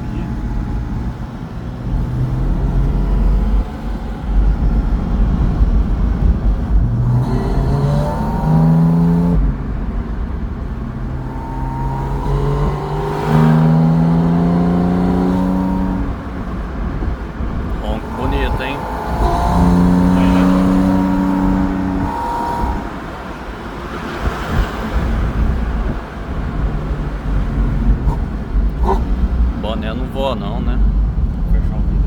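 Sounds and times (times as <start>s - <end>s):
flat-six engine revving hard: 2.0s - 9.4s, 10.8s - 25.6s.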